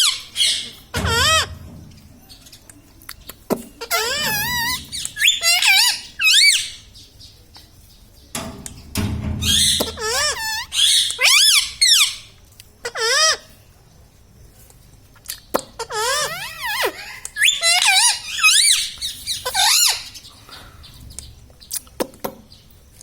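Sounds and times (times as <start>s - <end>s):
parrot squawking and chattering: 0.0s - 1.6s, 3.8s - 6.9s, 9.4s - 13.5s, 15.6s - 20.2s.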